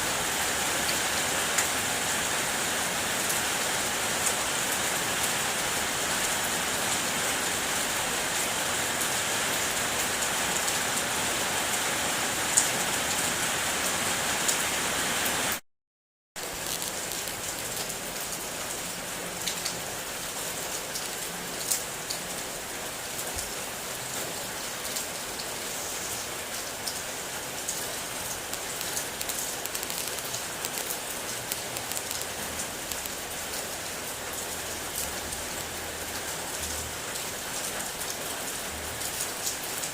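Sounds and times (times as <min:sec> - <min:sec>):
rain falling on a car: 0:00.0 - 0:15.6, 0:16.4 - 0:39.9
raindrops ticking: 0:16.4 - 0:22.4, 0:26.8 - 0:37.2.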